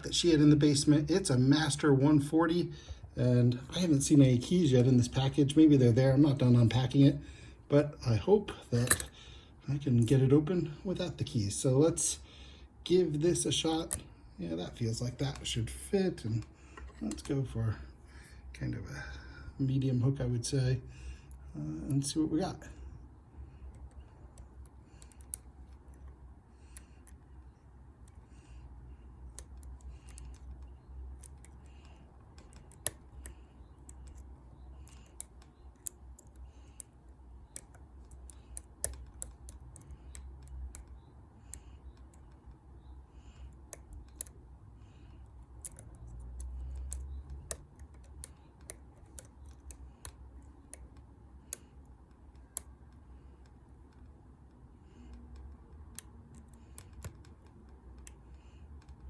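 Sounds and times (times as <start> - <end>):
lock pins clicking and scratching: 8.5 - 9.2, 23.4 - 59.0.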